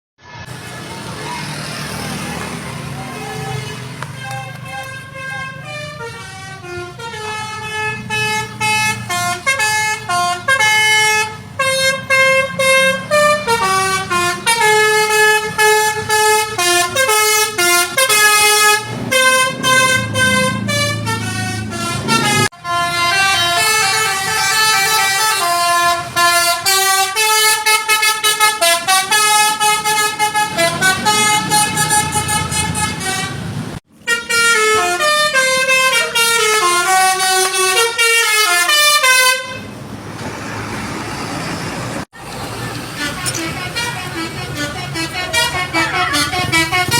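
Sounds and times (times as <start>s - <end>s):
bus engine rumble: 0.3s - 46.9s
multi-tone bus horn melody: 0.4s - 39.8s, 42.4s - 46.9s.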